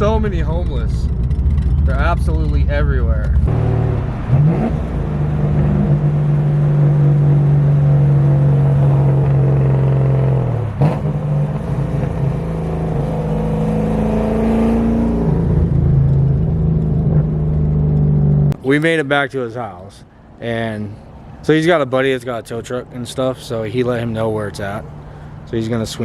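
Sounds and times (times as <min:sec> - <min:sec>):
car engine running: 0:00.0 - 0:18.6.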